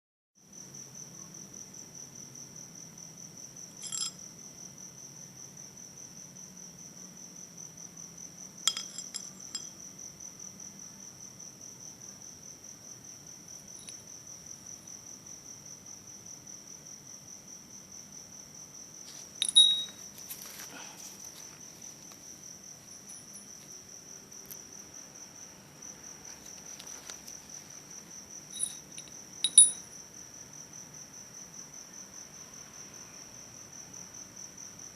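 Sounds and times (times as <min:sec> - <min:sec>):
cricket trilling: 0:00.4 - 0:34.9
short metallic clinks: 0:03.8 - 0:04.2, 0:08.7 - 0:09.8, 0:19.4 - 0:20.0, 0:28.5 - 0:29.9.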